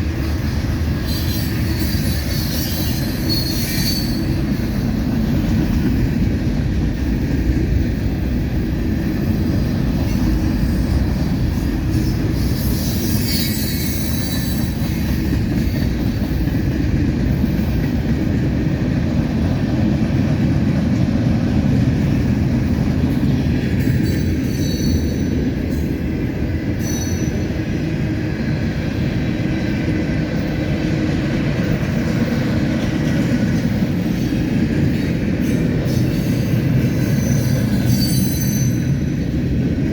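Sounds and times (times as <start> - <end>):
train wheels rumbling on rail: 0.0 - 39.9
high-pitched wheel squeals: 1.0 - 4.4, 12.4 - 14.8, 24.0 - 25.4, 26.8 - 27.5, 37.0 - 39.2.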